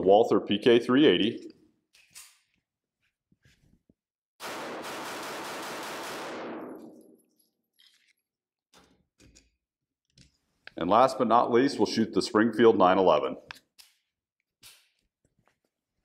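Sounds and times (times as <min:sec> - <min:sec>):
pistol shots in rapid string: 0:04.4 - 0:07.1.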